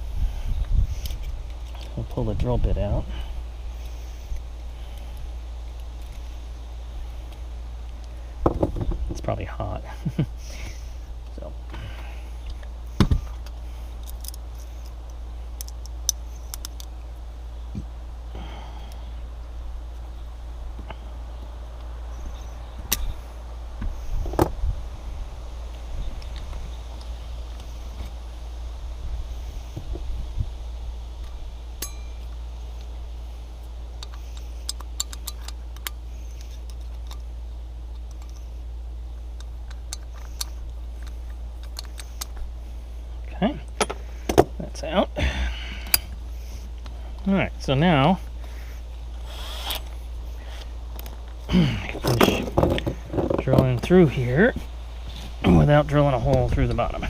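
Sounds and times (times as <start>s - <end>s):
steady low hum: 0.0s - 57.0s
small metallic clicks and taps: 34.0s - 37.3s.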